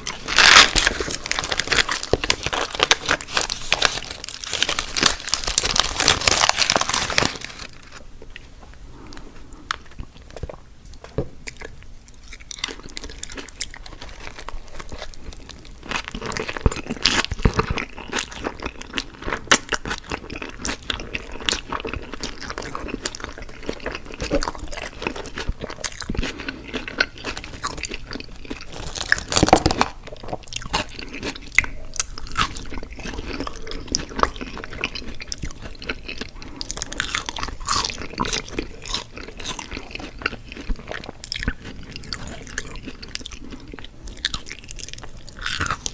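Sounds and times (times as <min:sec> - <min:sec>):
crunchy food being chewed: 0:00.0 - 0:45.9
loud paper rustle: 0:00.2 - 0:07.9.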